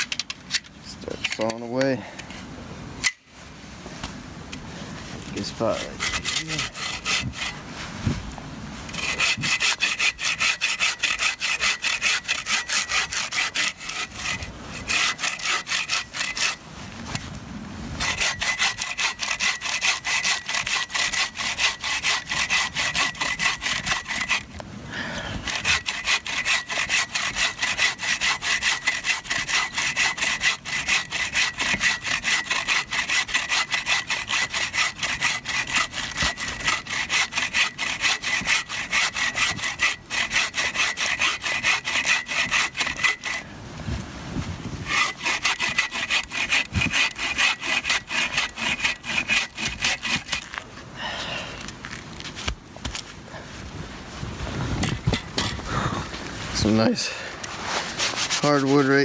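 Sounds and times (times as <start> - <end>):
hand saw cutting log: 5.3 - 8.2, 8.9 - 17.3, 18.0 - 24.6, 25.4 - 43.5, 44.8 - 51.2, 56.6 - 59.0.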